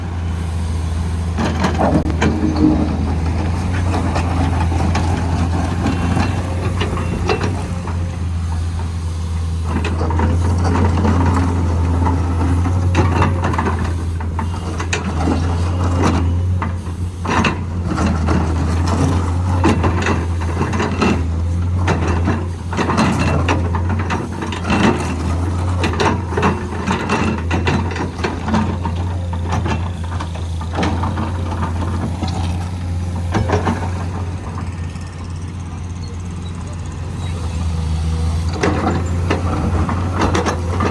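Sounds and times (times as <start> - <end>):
heavy machine engine running: 0.0 - 40.9
metallic clanks and rattles: 1.4 - 8.1.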